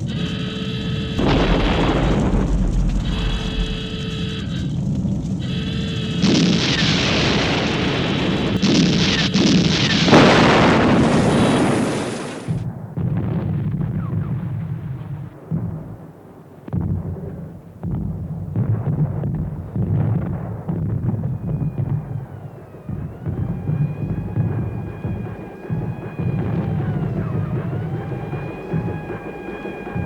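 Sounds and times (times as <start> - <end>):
crackles and debris impacts: 1.0 - 30.0
pitched tone: 1.2 - 4.5
low rumble: 1.2 - 5.4, 10.1 - 30.0
large explosion blasts: 1.2 - 30.0.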